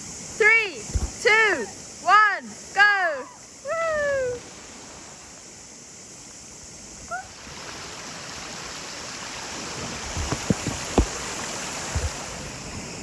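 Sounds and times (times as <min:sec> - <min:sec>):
rushing river water: 0:03.4 - 0:13.0.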